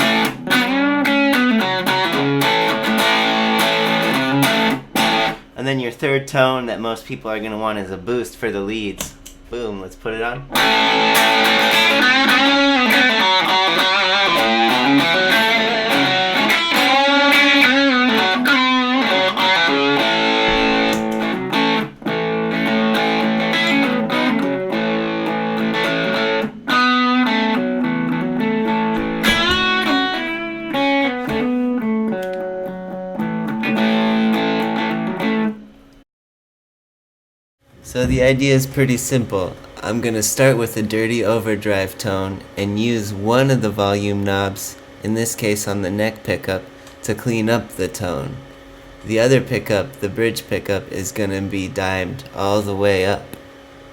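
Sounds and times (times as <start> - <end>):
distorted electric guitar lead: 0.0 - 5.5, 10.3 - 35.7.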